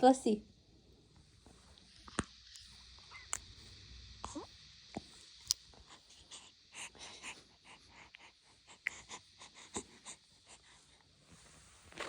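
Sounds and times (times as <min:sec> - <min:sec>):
faint wheezy breathing: 0:05.9 - 0:11.1.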